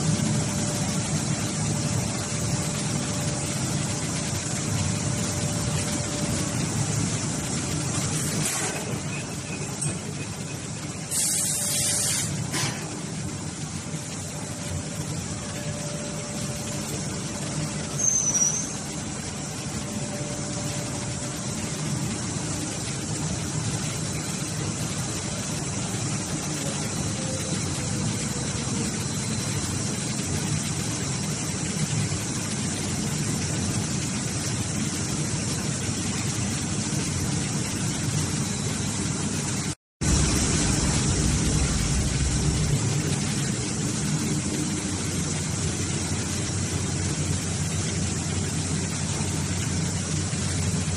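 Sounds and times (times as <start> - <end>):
short high squeak: 17.9 - 18.8
deeper rumble: 40.0 - 44.3.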